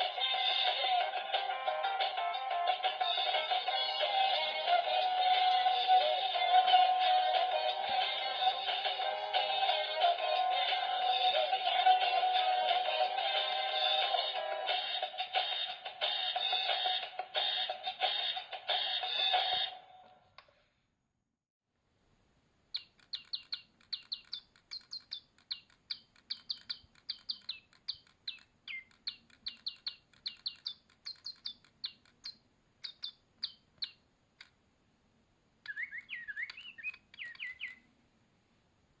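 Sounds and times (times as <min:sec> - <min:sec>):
electronic toy bird chirps: 0:02.7 - 0:19.8, 0:22.7 - 0:34.0, 0:35.6 - 0:37.8
loud electronic toy tune: 0:12.3 - 0:19.8.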